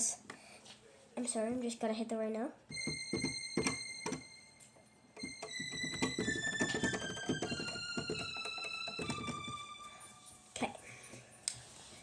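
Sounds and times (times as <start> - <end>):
electronic keyboard high notes: 2.7 - 10.5.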